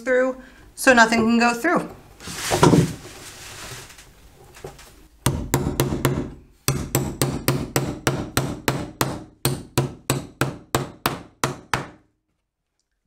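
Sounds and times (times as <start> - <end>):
hammer striking metal plate: 5.3 - 11.9.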